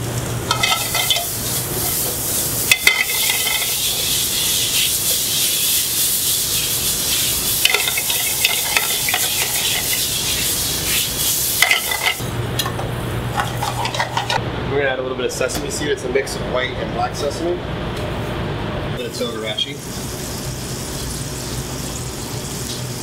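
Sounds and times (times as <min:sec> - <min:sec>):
food sizzling in oil: 0:00.0 - 0:12.3, 0:19.7 - 0:23.0
utensil clinking against pan: 0:00.5 - 0:01.3, 0:02.7 - 0:03.8, 0:07.6 - 0:10.0.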